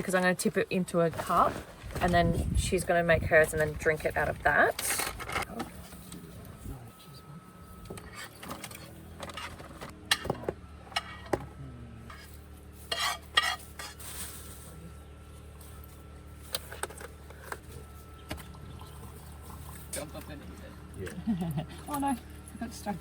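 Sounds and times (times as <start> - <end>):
utensils and containers clinking: 12.1 - 14.6.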